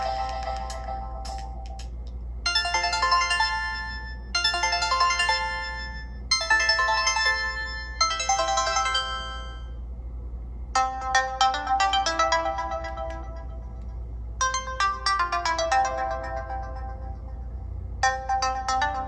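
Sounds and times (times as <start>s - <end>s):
phone ringtone melody: 0.0s - 1.6s, 2.5s - 9.8s, 10.8s - 19.0s.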